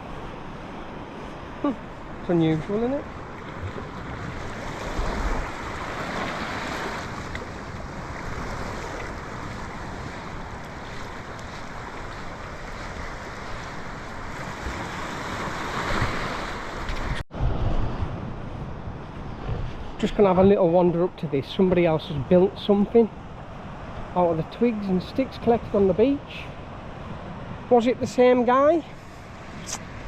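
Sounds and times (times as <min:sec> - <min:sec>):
surf breaking on shore: 0:00.0 - 0:18.3
wind buffeting microphone: 0:00.0 - 0:24.9.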